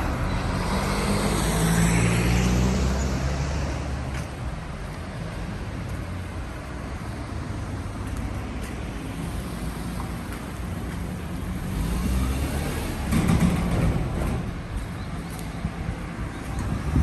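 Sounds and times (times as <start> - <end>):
vehicle passing close: 0.0 - 4.2, 9.0 - 14.7
road traffic rumbling: 0.0 - 17.0.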